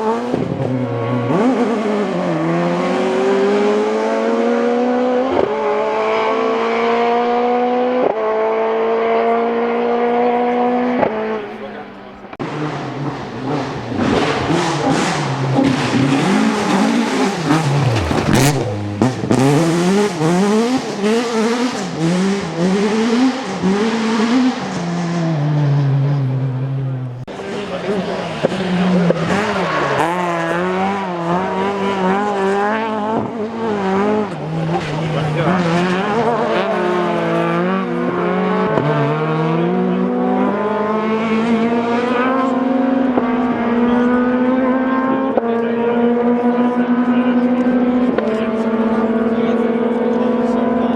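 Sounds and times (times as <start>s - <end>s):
car engine revving: 0.0s - 50.9s
engine sharp crack: 11.0s - 23.0s.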